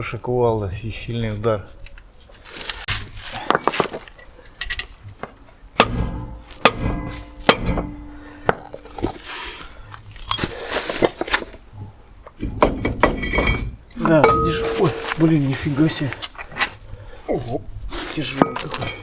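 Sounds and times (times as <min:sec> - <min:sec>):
metal parts clanking: 0:12.6 - 0:15.9, 0:18.3 - 0:19.0
metal scraping: 0:13.2 - 0:16.7.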